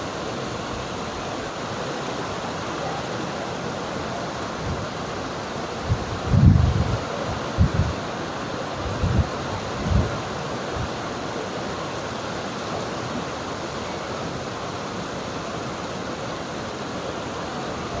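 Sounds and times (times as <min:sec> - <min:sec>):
river water flowing: 0:00.0 - 0:18.0.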